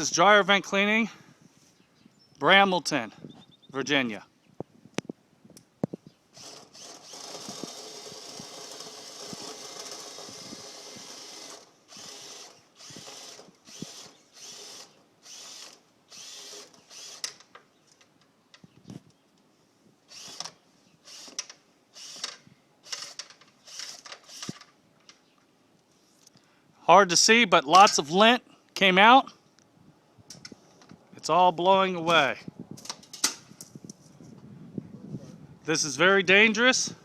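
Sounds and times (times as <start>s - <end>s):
power drill spinning brush: 6.4s - 17.4s, 20.1s - 21.4s, 22.0s - 24.7s.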